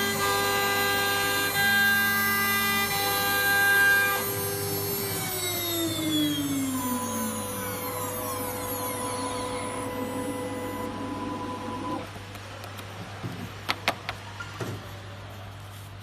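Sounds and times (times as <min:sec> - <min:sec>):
router motors whining: 0:00.0 - 0:12.1
machine hum: 0:00.0 - 0:13.2.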